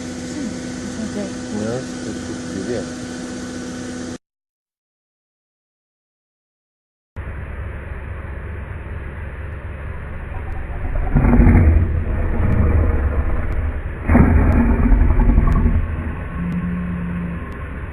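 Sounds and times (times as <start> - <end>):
steady low rumble: 7.2 - 17.9
deep snoring: 10.4 - 17.5.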